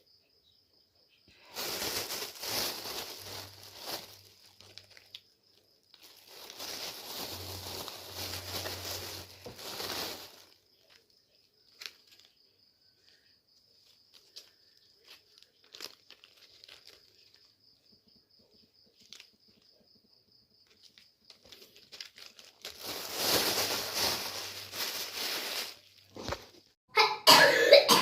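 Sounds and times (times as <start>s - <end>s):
cricket trill: 0.0s - 26.0s
loud crinkling rustle: 1.4s - 11.1s, 13.8s - 17.6s, 20.6s - 26.6s
person coughing: 26.9s - 28.0s.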